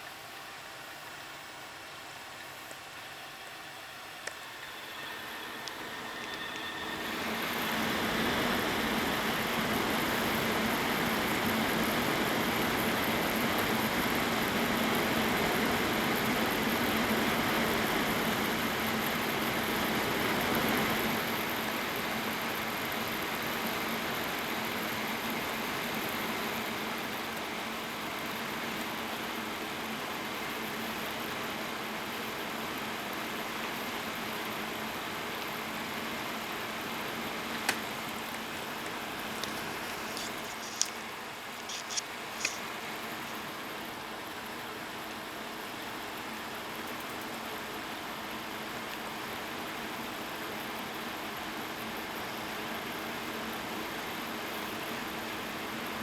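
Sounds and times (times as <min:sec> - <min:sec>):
computer fan noise: 0:00.0 - 0:56.0
high-pitched coil whistle: 0:04.4 - 0:09.4.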